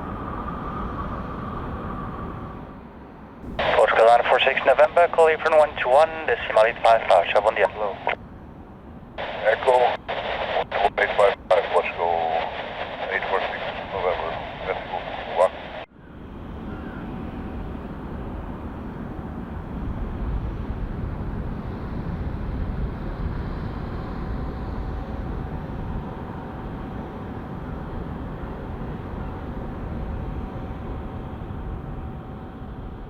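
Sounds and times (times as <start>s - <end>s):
faint engine whine: 0.0s - 33.0s
jet engines idling: 3.4s - 8.2s, 9.2s - 15.9s.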